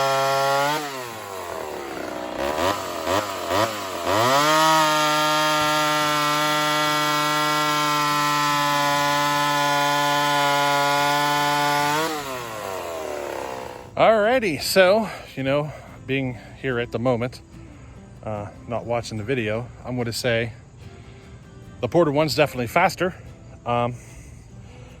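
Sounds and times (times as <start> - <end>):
chainsaw revving: 0.0 - 14.0.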